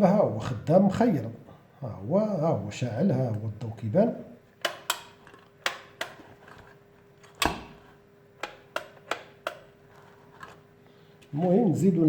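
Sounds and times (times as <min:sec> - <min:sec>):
faint steady hum: 0:00.0 - 0:12.0
electric kettle clicks and knocks: 0:07.4 - 0:07.8.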